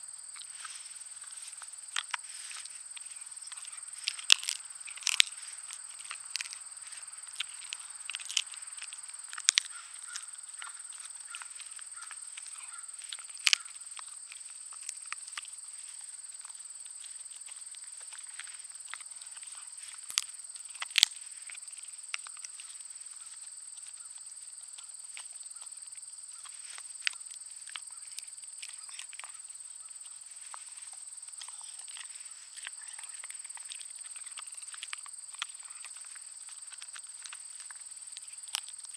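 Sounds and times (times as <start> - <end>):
dog chewing a bone: 0.4 - 22.7, 30.4 - 38.9.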